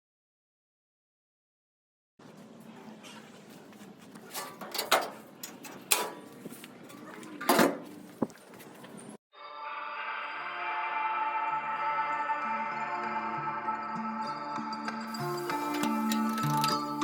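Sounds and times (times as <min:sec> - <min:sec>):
metal tools clanking: 0:04.3 - 0:06.3, 0:15.2 - 0:17.0.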